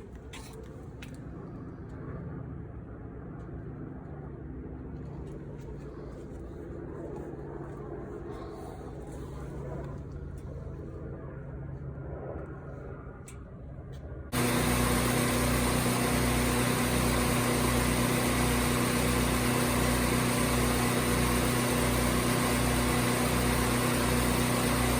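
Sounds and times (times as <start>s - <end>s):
air compressor running: 14.3s - 24.9s.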